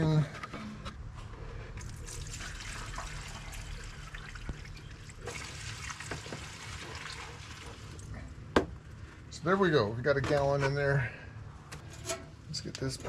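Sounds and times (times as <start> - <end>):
gasoline pouring through a funnel: 1.7 - 8.2.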